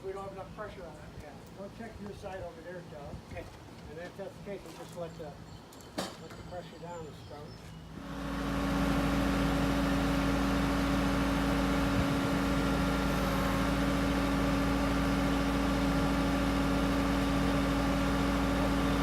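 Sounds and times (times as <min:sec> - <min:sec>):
backhoe engine idling: 0:08.0 - 0:19.0.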